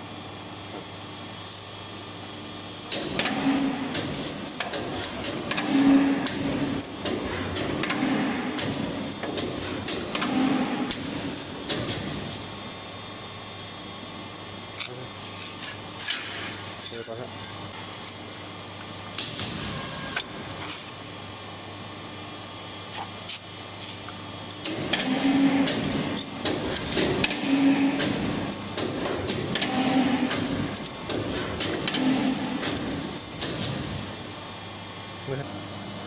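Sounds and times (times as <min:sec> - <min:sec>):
machine humming: 0:23.5 - 0:36.0
pipe punching clanks and knocks: 0:24.6 - 0:33.9.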